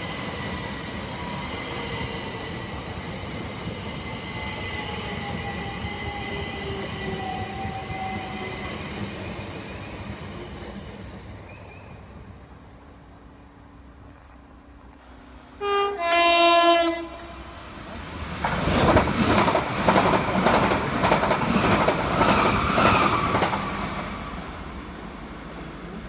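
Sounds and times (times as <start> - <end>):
two-note train horn: 15.6 - 17.5
train wheels clattering over rails: 18.3 - 24.4.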